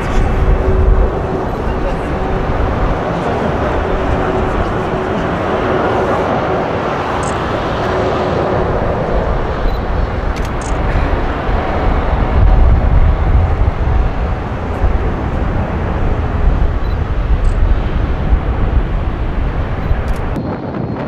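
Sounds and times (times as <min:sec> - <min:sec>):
jet engines rumbling: 0:00.0 - 0:21.0.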